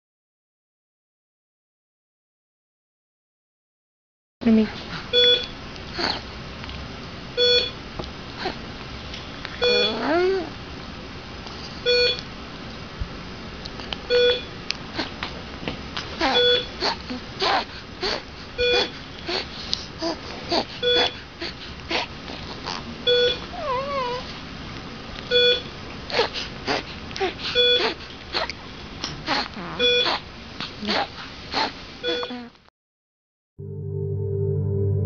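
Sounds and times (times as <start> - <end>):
child whimpering cries: 16.1 - 22.9, 23.5 - 24.3, 26.1 - 28.5, 29.3 - 30.2
child harsh noisy breathing: 16.2 - 22.8.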